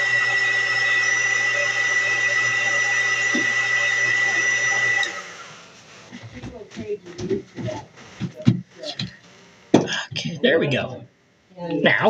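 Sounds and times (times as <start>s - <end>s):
heat gun blowing with whine: 0.0s - 5.7s.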